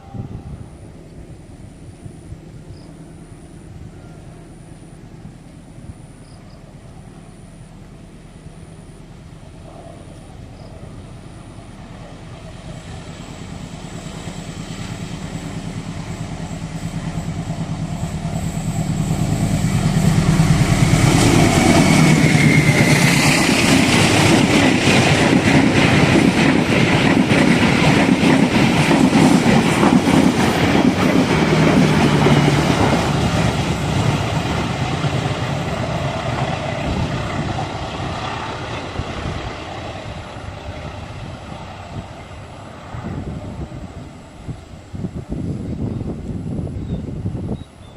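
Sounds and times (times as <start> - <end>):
diesel train engine drone: 0.0 - 47.9
train wheels clattering on rails: 12.2 - 39.8.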